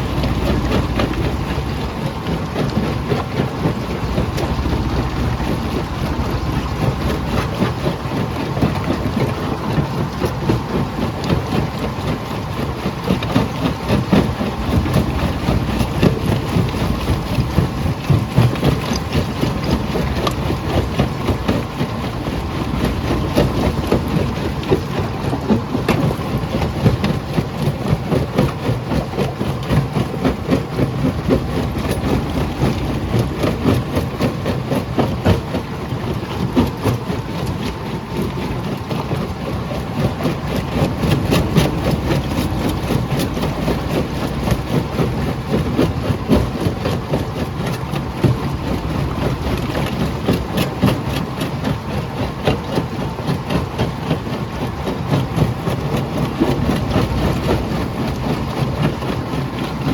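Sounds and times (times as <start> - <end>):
jaw crusher rumbling: 0.0 - 11.8, 13.8 - 28.2.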